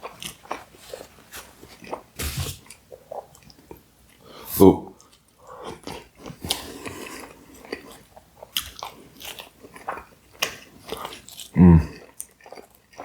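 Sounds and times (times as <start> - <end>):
chewing and biting pizza: 0.0 - 3.6, 5.0 - 13.0
loud voiced mouth sound: 11.6 - 12.0.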